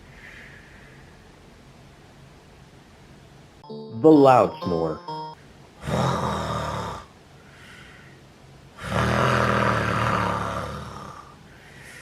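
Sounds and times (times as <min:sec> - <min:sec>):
breathy exhale: 0:00.0 - 0:01.2, 0:07.4 - 0:08.2, 0:10.8 - 0:12.0
man snoring: 0:05.8 - 0:07.1, 0:08.8 - 0:11.4.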